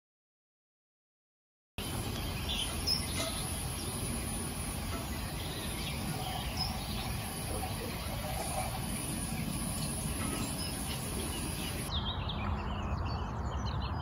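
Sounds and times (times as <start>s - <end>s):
steady high hiss: 1.8s - 11.9s
steady low rumble: 1.8s - 11.9s
bird chirps: 1.8s - 14.0s.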